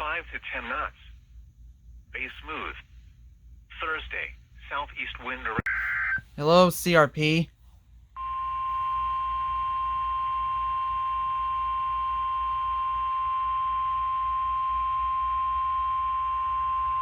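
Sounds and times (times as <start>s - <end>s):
steady electronic alarm tone: 8.2s - 17.0s.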